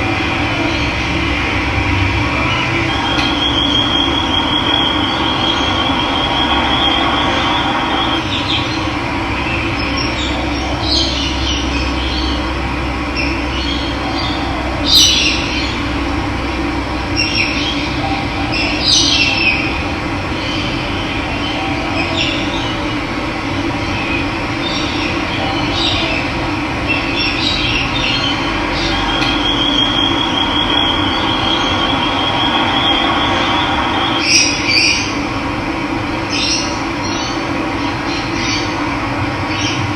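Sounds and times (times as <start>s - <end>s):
bird trilling: 2.4s - 8.8s, 27.2s - 35.2s.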